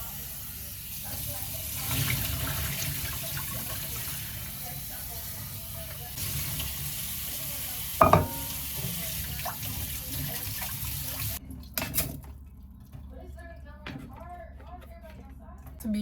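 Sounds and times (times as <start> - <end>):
tap water running into sink: 0.0 - 13.1
sharp knock with ring: 8.0 - 8.6.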